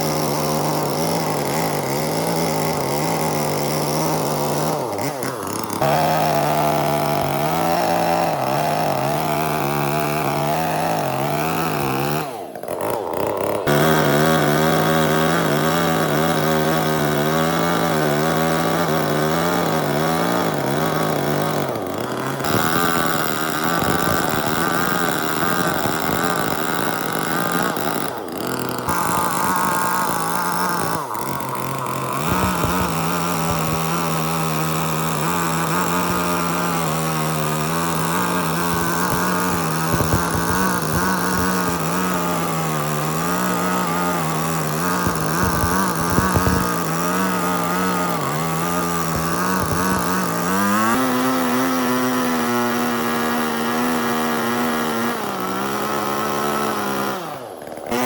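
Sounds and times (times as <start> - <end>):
power tool motor running: 0.0 - 58.0.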